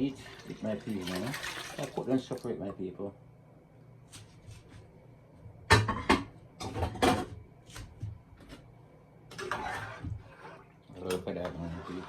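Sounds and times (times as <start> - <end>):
utensil scraping: 9.4 - 10.7, 11.3 - 12.0.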